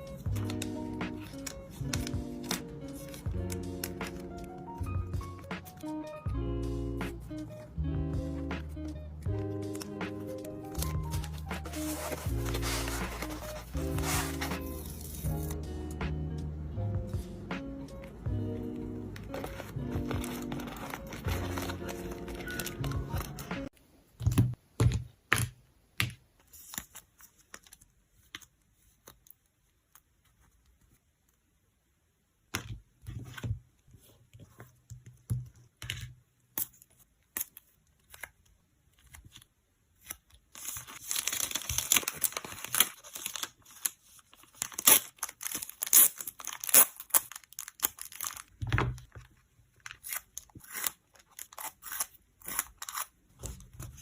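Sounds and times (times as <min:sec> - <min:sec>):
cards and plastic sleeves tapping: 0:00.1 - 0:06.0, 0:08.6 - 0:15.6, 0:19.1 - 0:29.2, 0:32.5 - 0:38.4
plastic packaging crinkling: 0:09.7 - 0:15.6, 0:19.3 - 0:23.5, 0:40.1 - 0:54.0.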